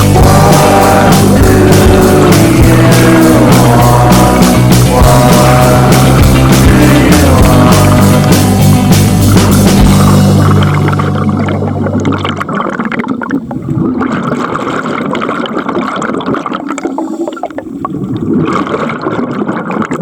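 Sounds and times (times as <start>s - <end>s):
background music: 0.0s - 12.1s
water gurgling and bubbling: 0.0s - 20.0s.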